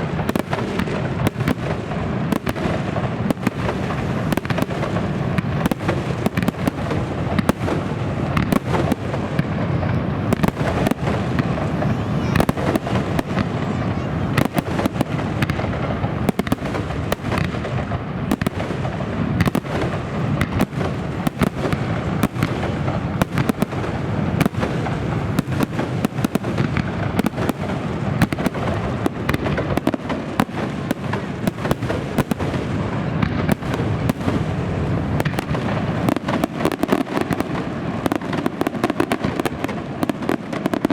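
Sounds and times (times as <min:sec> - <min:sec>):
fireworks bangs and crackles: 0:00.0 - 0:40.9.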